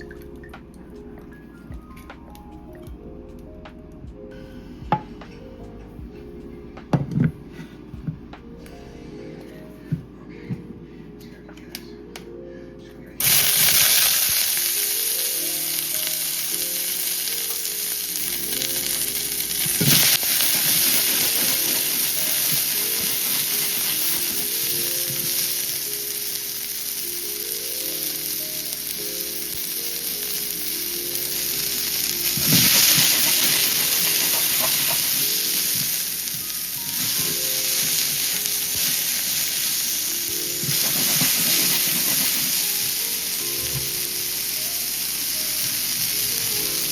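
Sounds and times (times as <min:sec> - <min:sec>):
food sizzling in a pan: 0:13.2 - 0:46.9.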